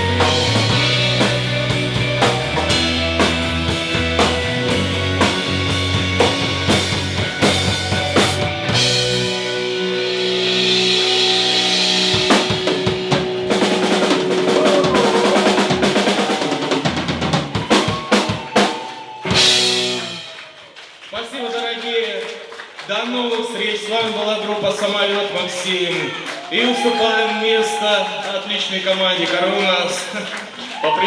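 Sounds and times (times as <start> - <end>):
fast drum fill: 0.0 - 9.2, 10.7 - 20.4
live rock band playing: 0.0 - 20.4
drum kit: 0.0 - 20.5
bass: 0.0 - 22.2.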